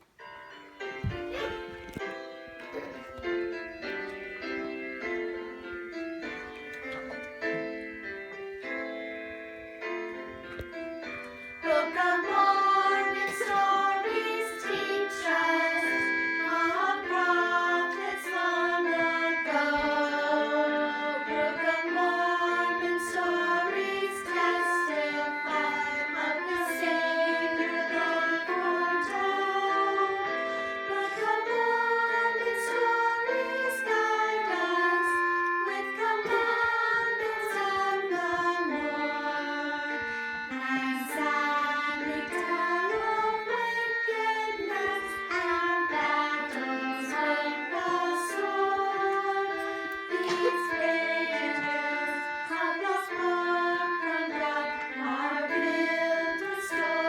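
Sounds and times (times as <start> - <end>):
piano playing: 0.0 - 57.0
voices singing children's song: 11.5 - 57.0.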